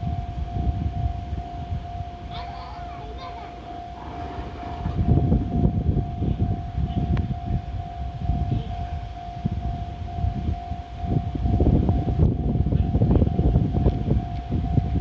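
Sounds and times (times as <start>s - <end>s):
level crossing electronic bell: 0.3s - 13.5s
low rumble: 3.7s - 8.2s.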